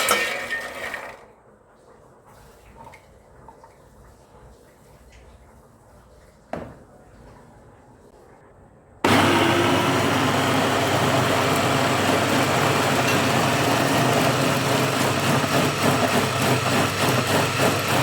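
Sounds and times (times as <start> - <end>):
electric blender running: 9.1 - 18.0.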